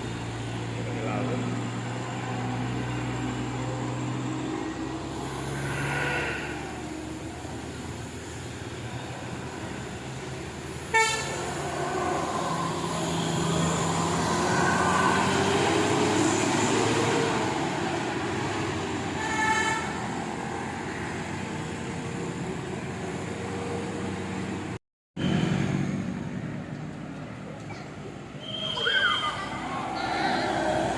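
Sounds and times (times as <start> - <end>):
vehicle noise: 0.0 - 30.9
musical vehicle horn blasts: 10.9 - 11.4, 19.2 - 20.0.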